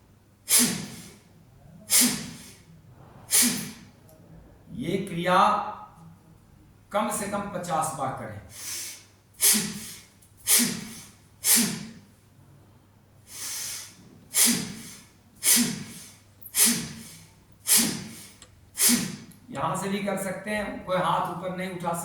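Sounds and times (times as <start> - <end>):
man breathing forcefully through nose: 0.5 - 1.2, 1.9 - 3.8, 8.5 - 12.0, 13.2 - 19.3.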